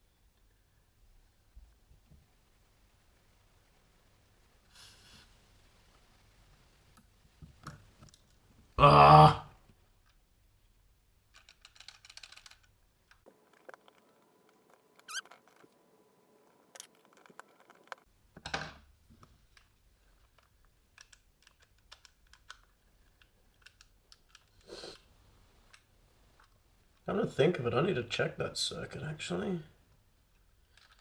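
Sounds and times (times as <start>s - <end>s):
plastic parts clicking: 11.3s - 18.1s, 30.7s - 31.0s
rustling: 13.3s - 18.1s.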